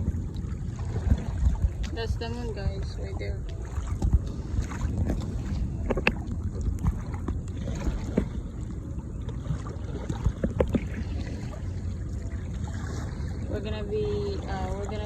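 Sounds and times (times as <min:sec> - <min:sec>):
paddle splashing water: 0:00.0 - 0:15.0
steady low rumble: 0:00.0 - 0:15.0.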